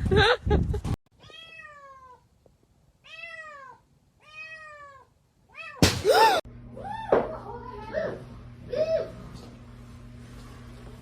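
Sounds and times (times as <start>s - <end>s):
cat meowing: 3.0s - 5.8s.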